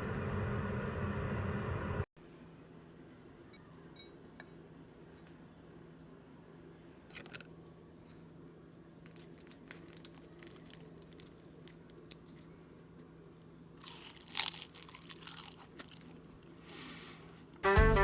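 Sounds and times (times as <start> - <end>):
crunchy chewing: 9.0 - 17.6.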